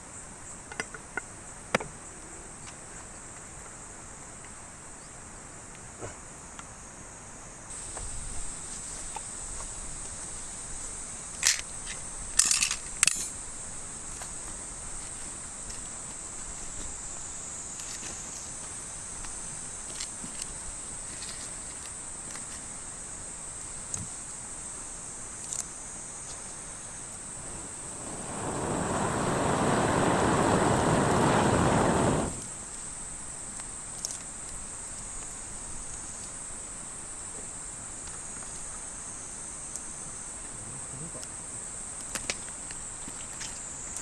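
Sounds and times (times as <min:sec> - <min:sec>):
insects chirring: 0:25.5 - 0:32.5
loud rushing noise: 0:27.3 - 0:32.5.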